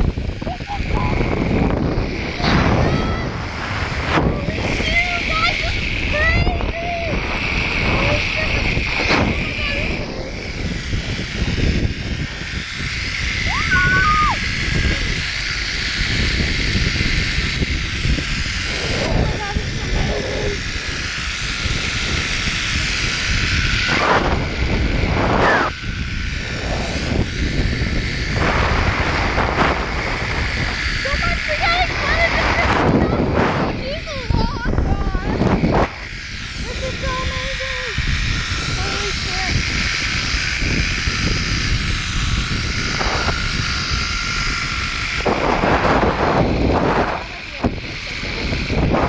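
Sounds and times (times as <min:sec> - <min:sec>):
wind buffeting microphone: 0:00.0 - 0:49.0
zip line trolley whirring: 0:00.0 - 0:49.0.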